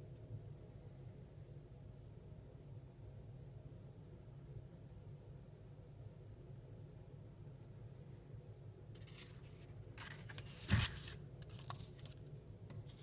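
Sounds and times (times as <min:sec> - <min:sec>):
cigar box rustling: 0:09.0 - 0:13.0.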